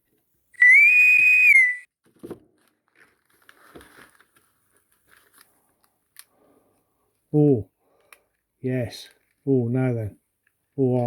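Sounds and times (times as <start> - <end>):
whistle-like tone: 0.6 - 1.9.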